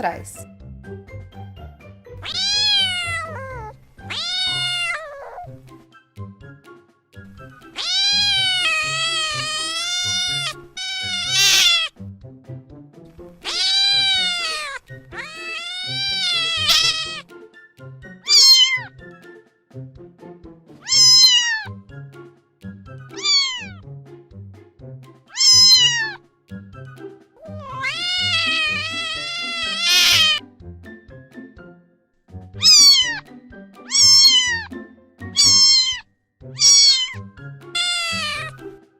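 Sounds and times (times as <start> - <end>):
soft background music: 0.0 - 38.9
cats meowing: 2.2 - 5.6, 7.8 - 11.9, 13.4 - 17.2, 18.2 - 18.9, 20.8 - 21.8, 23.1 - 23.8, 25.3 - 26.2, 27.4 - 30.4, 32.6 - 38.6.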